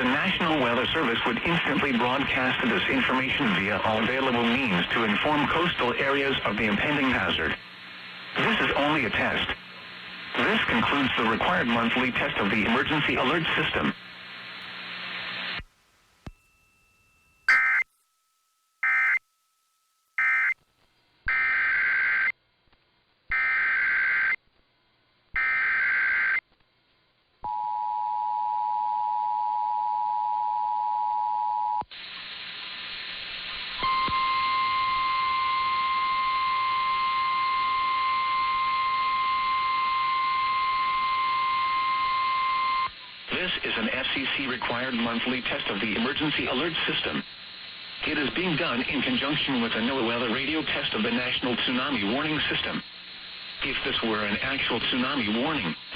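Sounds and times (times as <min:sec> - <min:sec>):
long steady single-pitch tone: 0:16.3 - 0:20.6, 0:33.8 - 0:43.0.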